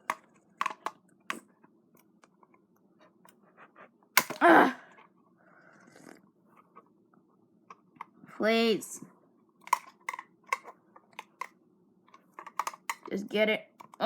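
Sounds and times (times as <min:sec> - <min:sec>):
person grunting with effort: 0:04.3 - 0:04.9
sharp plastic click: 0:12.1 - 0:13.2.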